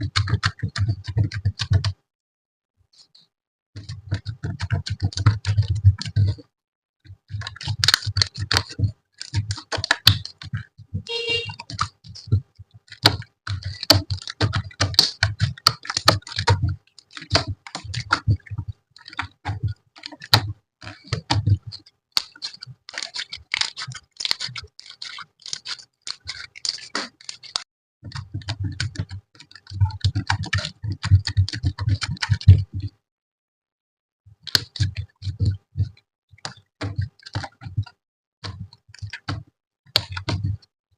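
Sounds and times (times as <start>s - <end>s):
short squeaky tone: 11.1s - 11.6s.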